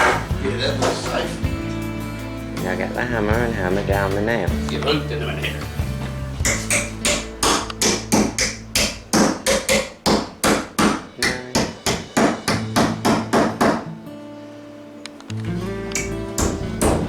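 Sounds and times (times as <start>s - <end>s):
hammer striking a nail: 6.4s - 13.8s, 16.0s - 17.0s.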